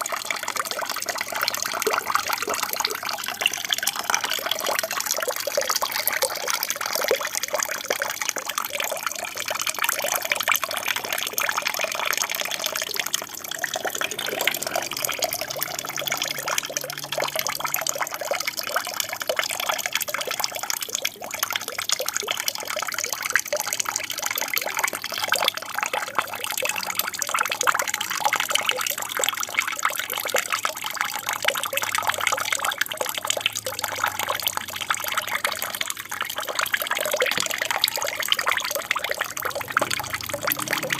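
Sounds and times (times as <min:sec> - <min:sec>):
water falling and splashing: 0:33.6 - 0:40.9.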